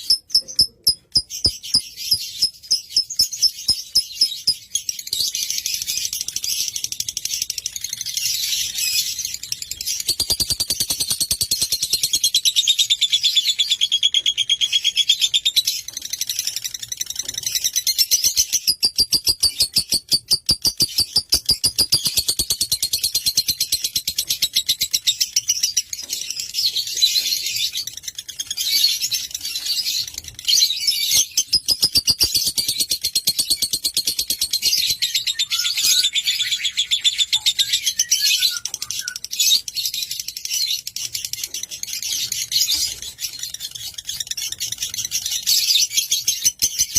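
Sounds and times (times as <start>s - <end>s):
bird chattering trill: 0.0s - 4.7s, 18.4s - 23.6s.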